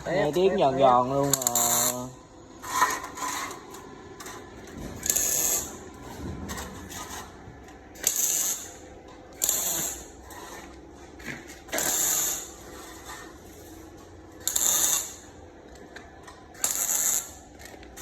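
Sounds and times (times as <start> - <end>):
welder arc crackling and hissing: 0.0 - 18.0.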